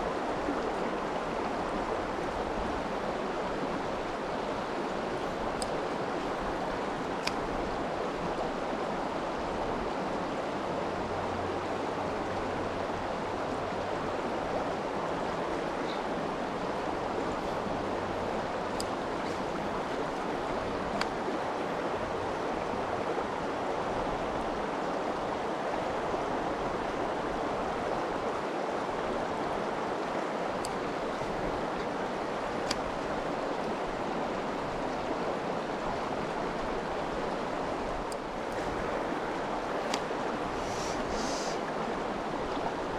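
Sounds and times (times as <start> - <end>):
stream rushing over rocks: 0.0 - 42.9
faint clicks: 4.9 - 7.5, 18.7 - 21.2, 30.6 - 33.0, 38.0 - 41.6.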